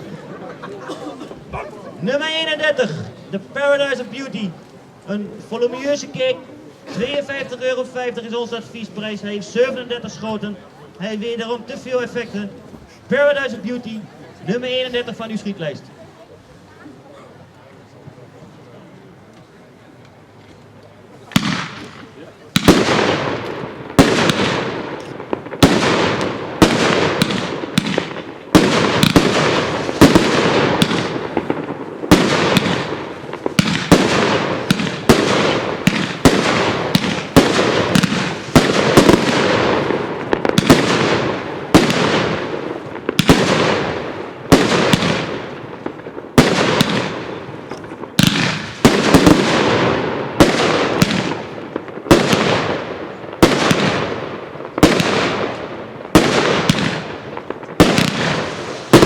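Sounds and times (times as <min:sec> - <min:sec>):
firework bangs with crackling: 0:21.3 - 0:59.0.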